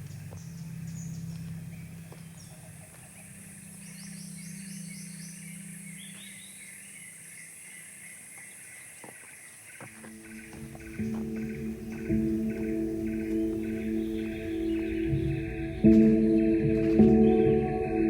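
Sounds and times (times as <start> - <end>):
birds chirping and warbling: 0.0 - 18.0
low hum: 10.2 - 18.0.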